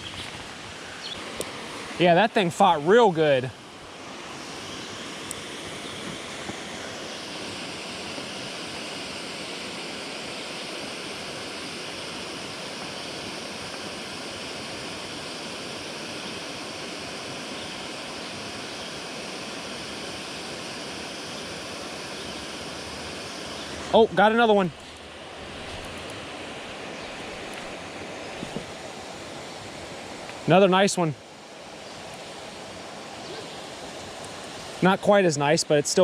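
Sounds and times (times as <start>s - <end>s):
water roaring through dam spillway: 0.0s - 36.0s.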